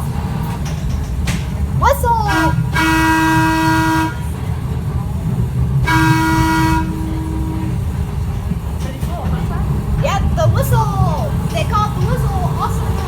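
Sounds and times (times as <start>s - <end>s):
streetcar low running rumble: 0.0s - 13.0s
streetcar horn blasts: 2.1s - 4.7s, 5.7s - 8.3s.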